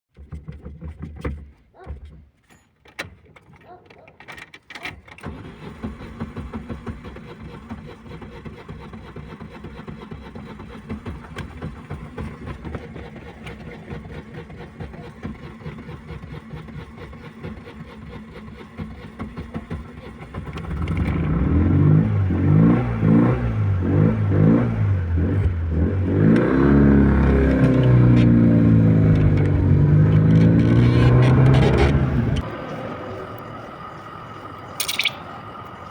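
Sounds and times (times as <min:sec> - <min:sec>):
car engine idling and revving: 0:05.3 - 0:32.8.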